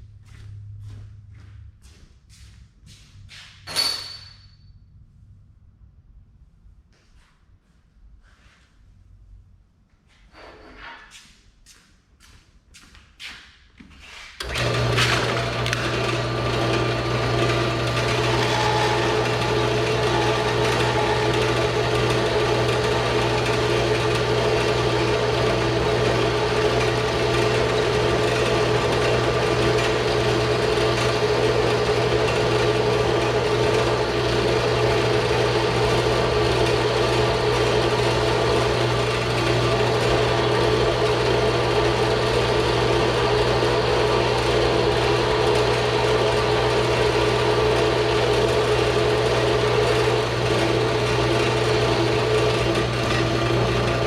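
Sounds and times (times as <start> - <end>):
bandsaw cutting metal: 14.4 - 54.0.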